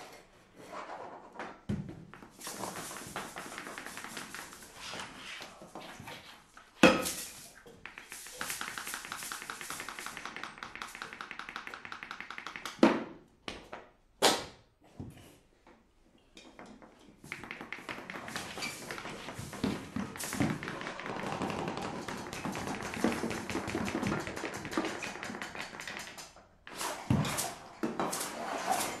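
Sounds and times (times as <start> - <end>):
fast even tapping: 7.8 - 12.8.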